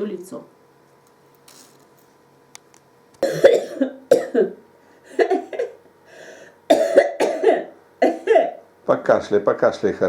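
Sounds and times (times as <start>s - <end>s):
woman coughing: 3.2s - 5.8s, 6.7s - 8.6s.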